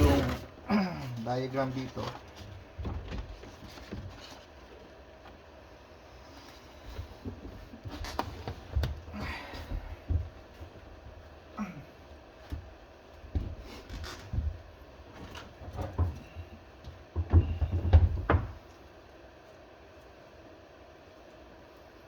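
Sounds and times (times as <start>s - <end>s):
objects knocking and bumping: 0.0s - 0.6s, 1.9s - 4.6s, 12.4s - 18.7s.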